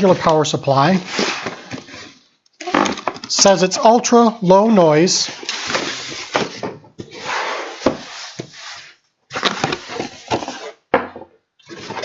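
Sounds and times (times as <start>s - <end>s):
cardboard packaging rustling: 0.0s - 3.3s, 5.2s - 10.8s.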